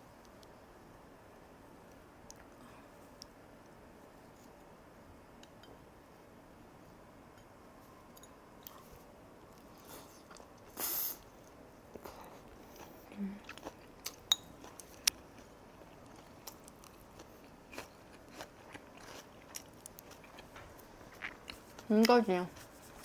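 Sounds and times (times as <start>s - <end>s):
person chewing food: 9.5s - 21.9s.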